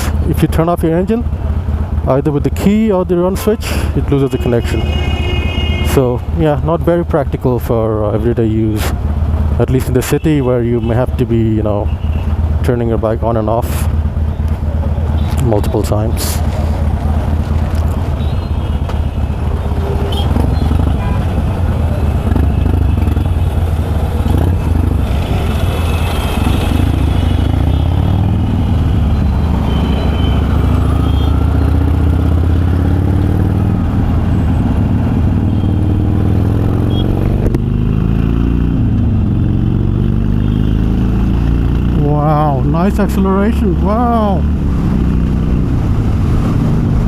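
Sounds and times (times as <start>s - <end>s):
motorcycle engine accelerating: 16.4s - 47.0s.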